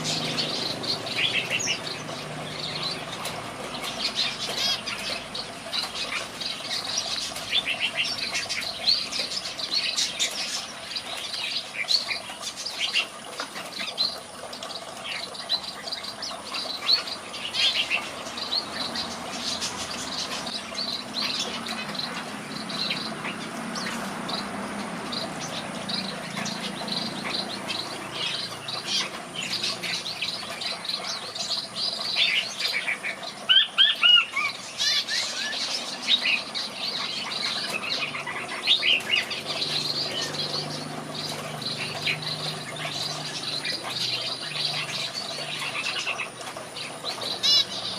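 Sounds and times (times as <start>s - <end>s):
birds chirping: 0.0s - 47.9s.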